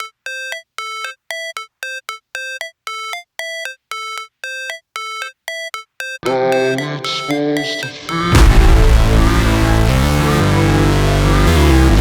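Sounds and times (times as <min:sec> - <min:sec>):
bell-like synthesizer notes: 0:06.2 - 0:10.9.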